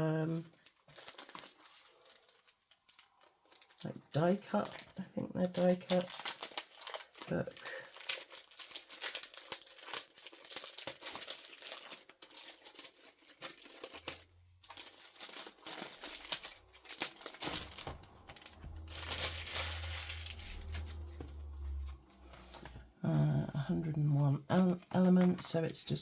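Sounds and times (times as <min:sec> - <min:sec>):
packaging crinkling and rustling: 0:00.0 - 0:22.8, 0:24.5 - 0:26.0
low rumble: 0:14.6 - 0:24.0.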